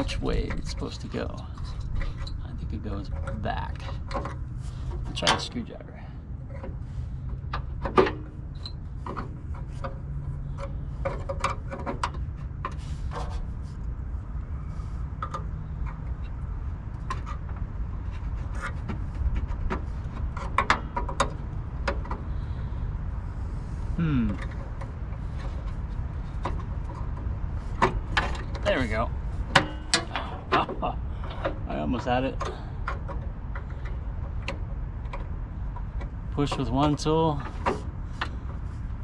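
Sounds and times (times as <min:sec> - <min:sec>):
tools scraping metal latch: 0:00.0 - 0:05.6, 0:17.0 - 0:22.3, 0:24.4 - 0:36.7.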